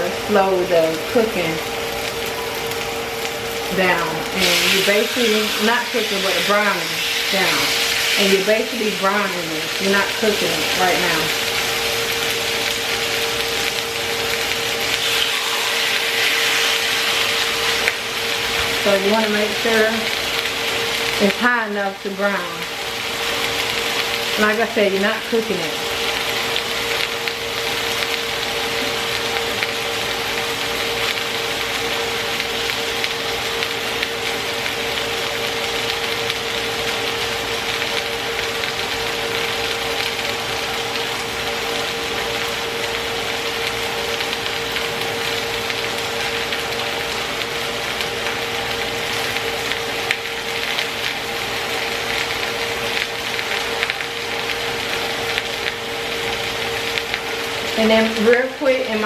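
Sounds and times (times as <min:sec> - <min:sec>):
chicken sizzling in a pan: 0:00.0 - 0:59.0
steady hum: 0:00.0 - 0:59.0.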